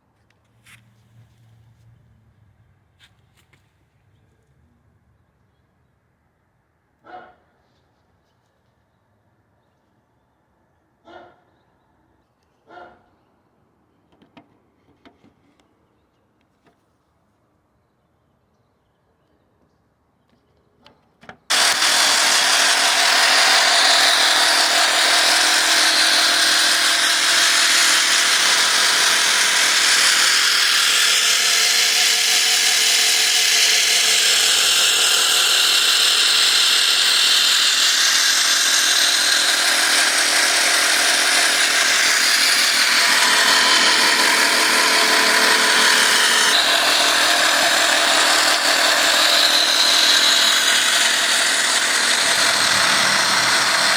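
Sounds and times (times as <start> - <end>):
electric saw cutting wood: 21.5 - 53.9.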